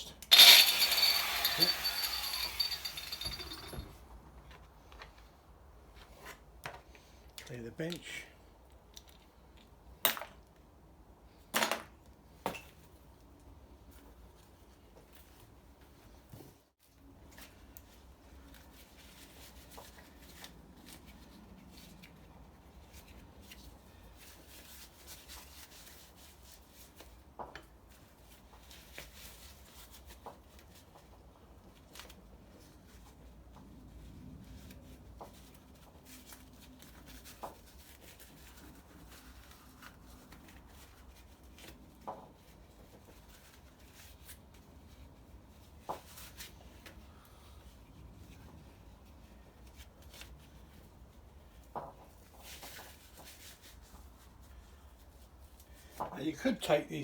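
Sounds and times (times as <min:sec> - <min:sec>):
rubbing and rustling: 0:34.4 - 0:46.8, 0:48.1 - 0:56.0.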